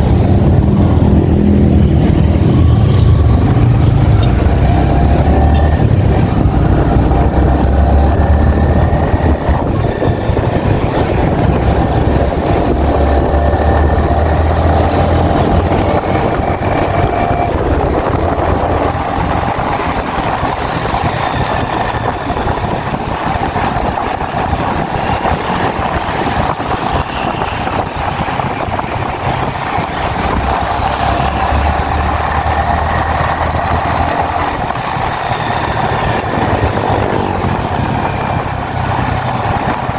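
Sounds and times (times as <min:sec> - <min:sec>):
motorcycle engine running: 0:00.0 - 0:39.9
riding noise rush: 0:00.0 - 0:39.9.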